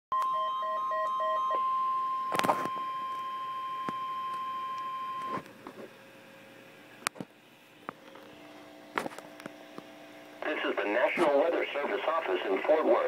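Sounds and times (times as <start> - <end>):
steady alarm tone: 0.1 - 5.4.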